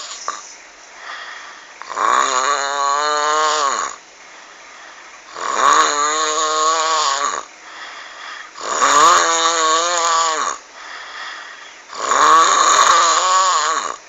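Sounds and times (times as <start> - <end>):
quiet breathing: 0.0 - 1.9, 4.2 - 5.4, 7.4 - 8.6, 10.5 - 12.0
person snoring: 0.0 - 4.0, 5.3 - 7.5, 8.4 - 11.1, 11.9 - 14.0.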